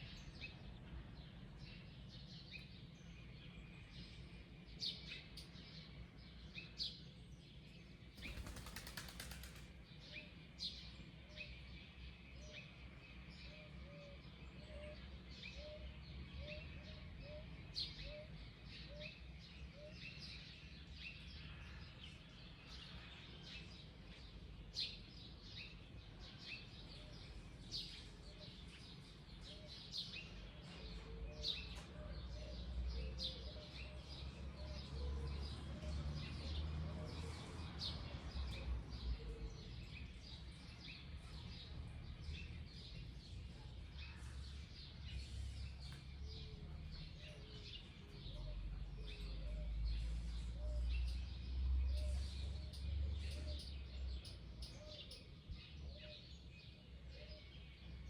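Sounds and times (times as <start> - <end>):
birds chirping: 8.1 - 10.8.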